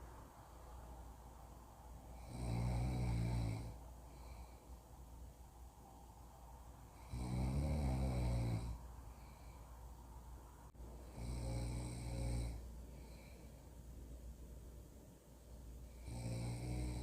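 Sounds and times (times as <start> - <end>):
soft breaths: 0.0 - 17.0
person snoring: 2.2 - 4.6, 7.0 - 9.6, 11.0 - 13.4, 15.9 - 17.0.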